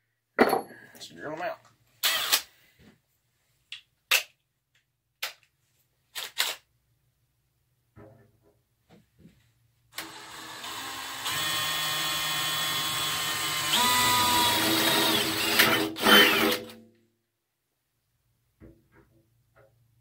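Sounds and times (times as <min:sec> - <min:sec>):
electric drill cutting steel: 0:02.0 - 0:02.5, 0:10.0 - 0:16.7.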